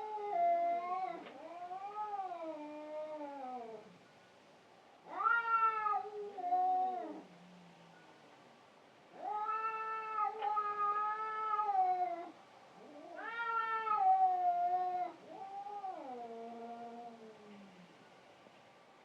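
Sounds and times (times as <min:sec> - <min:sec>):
cats yowling in a fight: 0:00.0 - 0:04.0, 0:05.0 - 0:07.6, 0:09.1 - 0:17.8.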